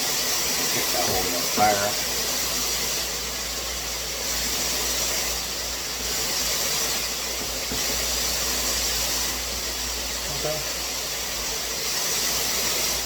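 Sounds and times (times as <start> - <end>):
shower head spraying water: 0.0 - 13.0.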